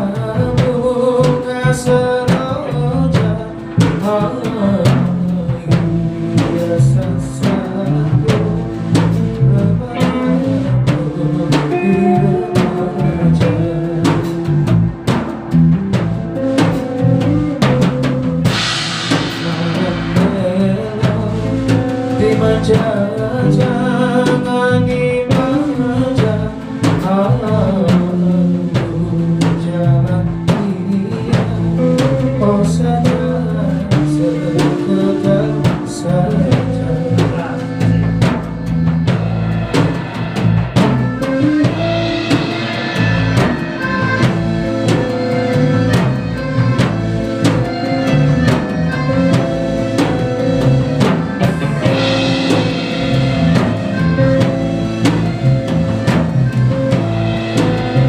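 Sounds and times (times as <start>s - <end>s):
drum kit beat: 0.0s - 58.0s
sustained melodic instruments: 34.9s - 58.0s.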